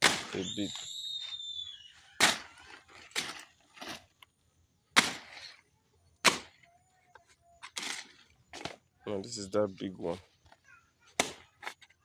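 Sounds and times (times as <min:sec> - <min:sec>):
blade chopping plant stems: 0:00.0 - 0:00.4, 0:05.0 - 0:05.5, 0:11.2 - 0:11.7.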